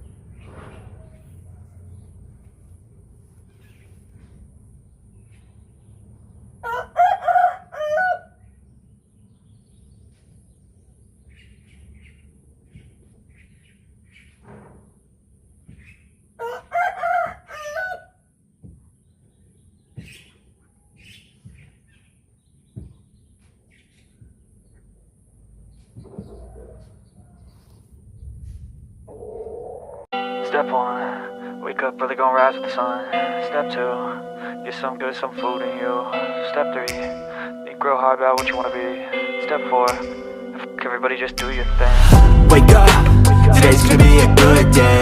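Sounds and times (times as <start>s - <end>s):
rooster crowing: 6.6s - 8.4s, 16.4s - 18.2s.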